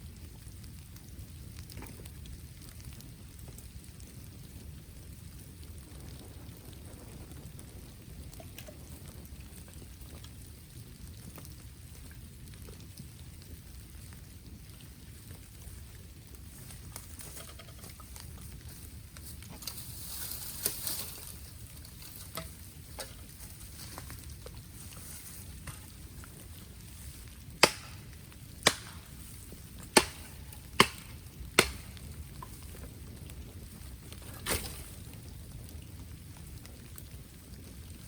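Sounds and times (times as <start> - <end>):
fire crackling: 0.0 - 38.0
sharp loud bamboo cracks: 16.9 - 18.2, 19.2 - 24.2, 27.5 - 32.8, 34.2 - 35.1.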